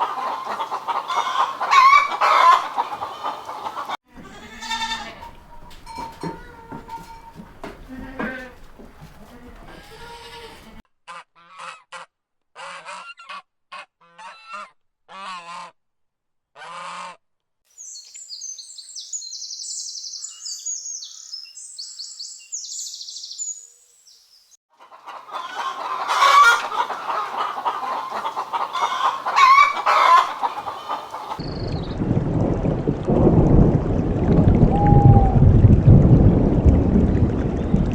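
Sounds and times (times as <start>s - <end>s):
geese honking: 0.0s - 10.8s, 24.8s - 31.4s
small birds chirping: 17.7s - 24.6s, 25.2s - 32.0s.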